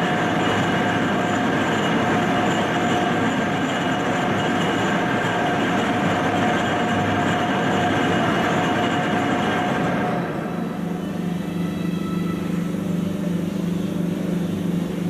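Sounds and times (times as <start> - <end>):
train rail rumble: 0.0 - 15.0
faint whining tones: 9.4 - 15.0.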